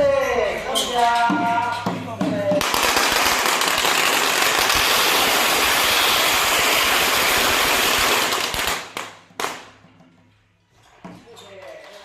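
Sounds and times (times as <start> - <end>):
firecrackers crackling: 2.4 - 9.8.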